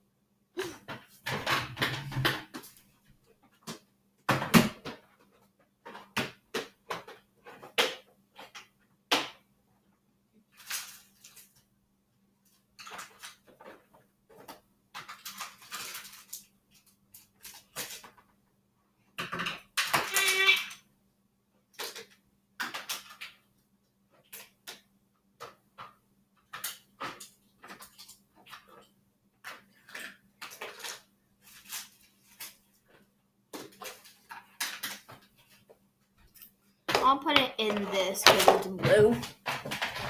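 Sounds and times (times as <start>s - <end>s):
clatter of objects: 0.6s - 8.8s, 10.5s - 11.7s, 12.4s - 18.4s, 19.1s - 20.3s, 21.7s - 35.7s, 36.3s - 40.0s
objects knocking and clicking: 36.9s - 40.0s.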